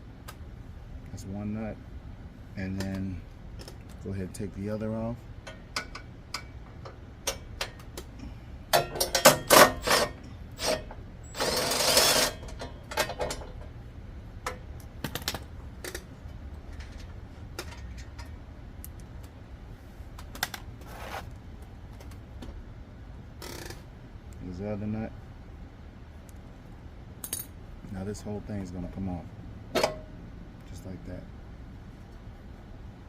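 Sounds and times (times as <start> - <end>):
dense ratchet rattle: 8.7 - 13.4, 23.4 - 23.8.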